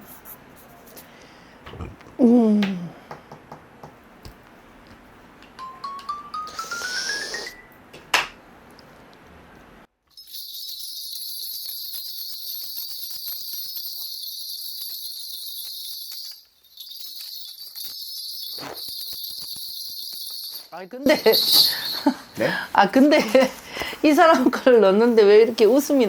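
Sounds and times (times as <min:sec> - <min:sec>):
small ritual bells jingling: 0:10.1 - 0:23.5.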